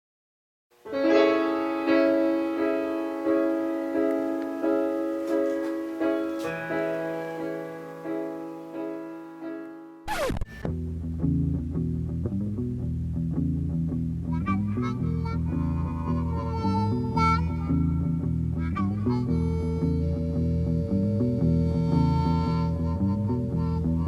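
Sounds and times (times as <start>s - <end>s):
piano chords: 0.9s - 10.3s.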